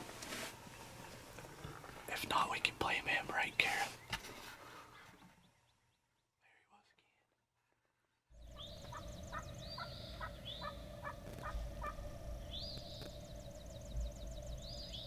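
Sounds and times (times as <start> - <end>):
songbirds singing: 0.6 - 7.2, 8.1 - 15.0
wild turkey calling: 8.4 - 15.0.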